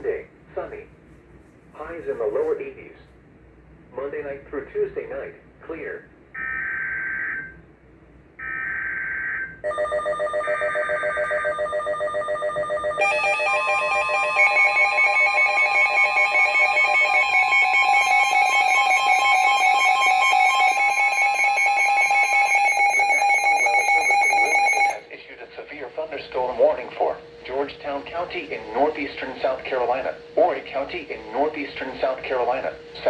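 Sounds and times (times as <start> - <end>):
rapid alarm beeps: 6.4 - 7.6, 11.6 - 25.2, 26.4 - 33.0
steady warning tone: 8.4 - 33.0.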